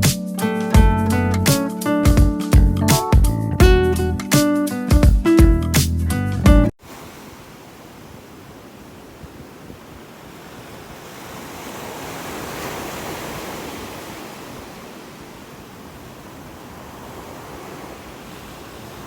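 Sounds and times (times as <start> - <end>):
sea waves washing on beach: 6.8 - 19.0.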